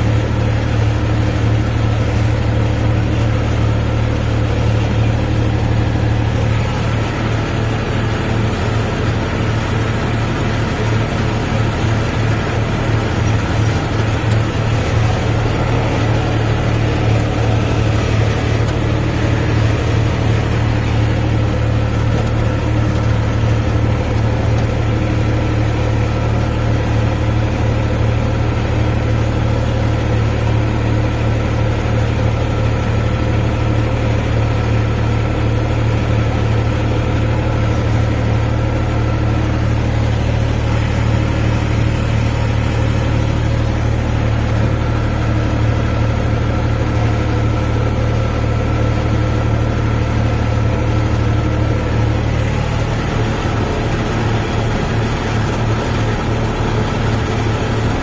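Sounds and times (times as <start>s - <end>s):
tractor diesel engine droning: 0.0s - 58.0s.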